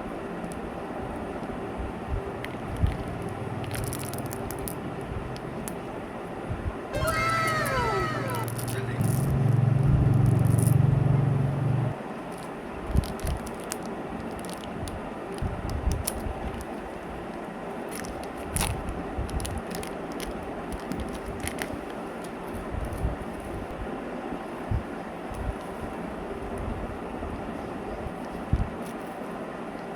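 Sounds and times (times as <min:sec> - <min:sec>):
wrappers crackling: 0:02.4 - 0:04.8, 0:07.2 - 0:09.3, 0:12.2 - 0:16.8, 0:17.9 - 0:22.0
loud low hum: 0:06.9 - 0:12.0.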